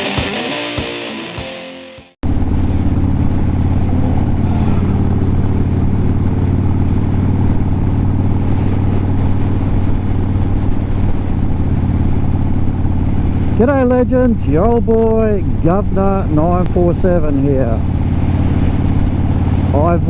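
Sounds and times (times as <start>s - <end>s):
distorted guitar music: 0.0s - 9.0s
motorcycle engine running: 2.2s - 20.0s.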